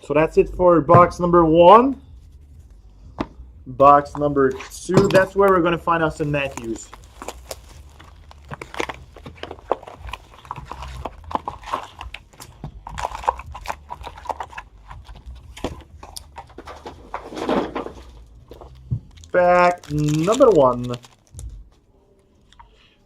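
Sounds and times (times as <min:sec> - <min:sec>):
wrapper crinkling and ripping: 0:06.0 - 0:21.8.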